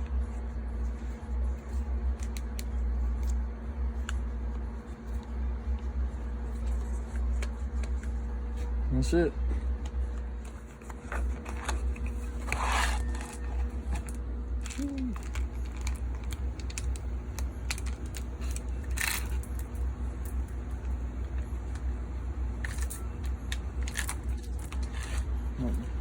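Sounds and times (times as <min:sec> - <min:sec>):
engine parts clicking and clinking: 0:10.8 - 0:21.0.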